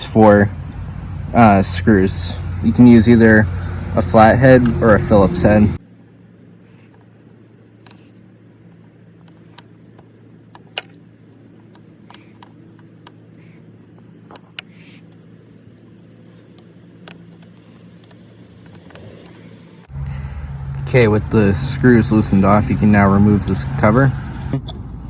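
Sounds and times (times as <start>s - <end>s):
steady low hum: 0.0s - 5.8s, 19.8s - 25.0s.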